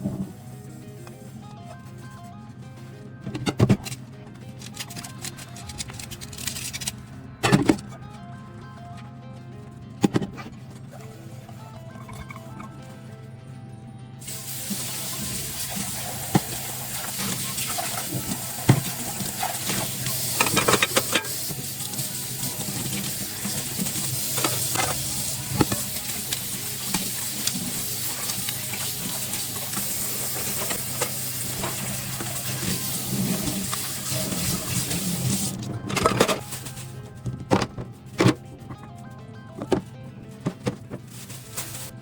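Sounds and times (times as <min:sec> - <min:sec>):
dishes and utensils clinking: 0:10.0 - 0:12.8, 0:14.8 - 0:22.0, 0:22.6 - 0:35.0.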